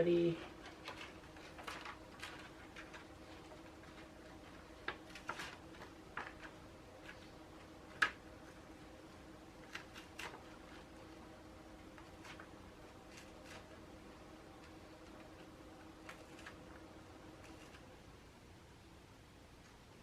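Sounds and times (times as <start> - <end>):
faint steady hum: 0.0 - 20.0
adhesive sheet crinkling: 0.4 - 8.7, 9.4 - 18.0.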